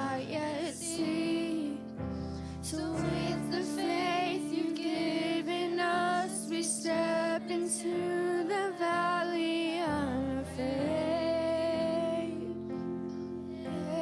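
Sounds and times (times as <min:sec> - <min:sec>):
person singing long held notes: 0:02.7 - 0:14.0
sustained instrumental backing: 0:10.5 - 0:14.0.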